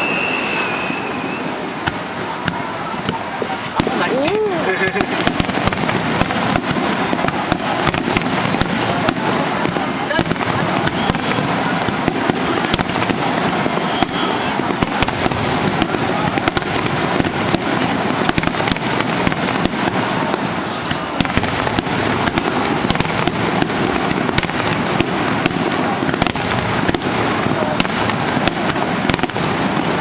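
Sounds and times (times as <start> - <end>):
fireworks bursts and crackling: 0.0 - 30.0.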